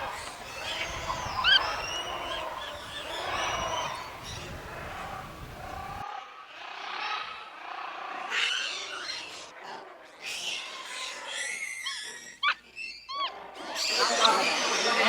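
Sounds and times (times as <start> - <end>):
monkeys calling: 0.0 - 6.0, 10.2 - 15.0.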